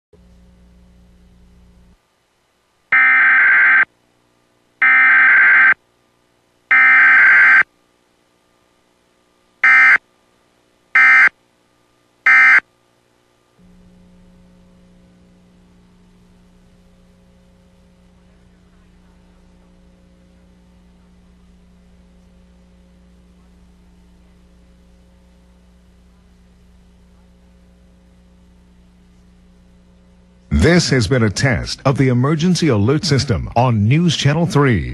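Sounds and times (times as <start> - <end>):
faint low hum: 0.2 - 34.9
digital data bursts: 6.7 - 7.6.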